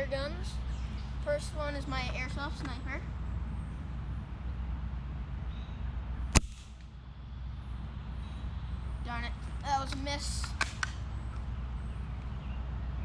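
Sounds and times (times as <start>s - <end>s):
low background rumble: 0.0s - 13.0s
airsoft rifle shot: 6.3s - 6.9s.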